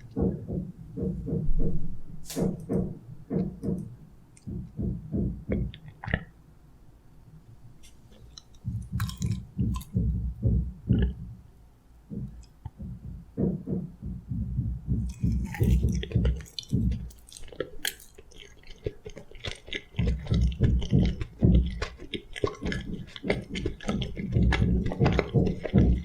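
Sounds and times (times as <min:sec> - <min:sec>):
person chewing food: 0:04.4 - 0:06.3, 0:07.8 - 0:11.2, 0:15.0 - 0:26.0
wet mouth clicks and smacks: 0:08.2 - 0:10.0, 0:15.1 - 0:26.0.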